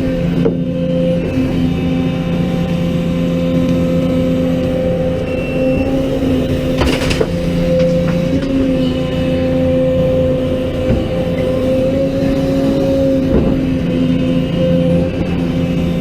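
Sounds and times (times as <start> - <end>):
diesel engine running: 5.7 - 16.0
metallic clatter: 6.6 - 9.2.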